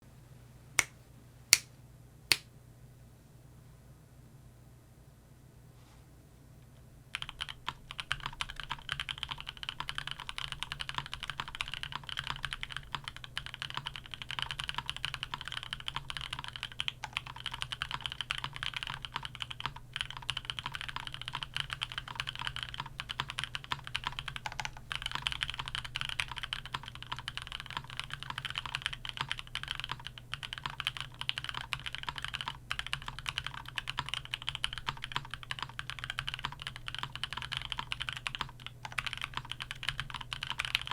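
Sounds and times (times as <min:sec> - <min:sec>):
fast typing on mechanical keyboard: 0:07.1 - 0:40.9.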